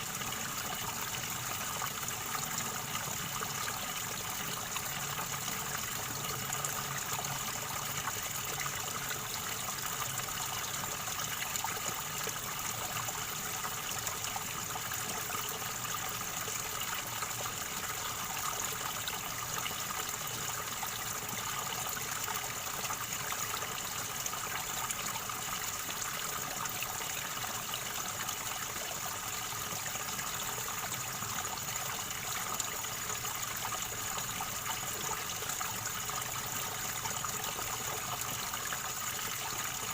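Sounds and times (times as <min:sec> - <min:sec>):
river water gurgling over stones: 0:00.0 - 0:39.9.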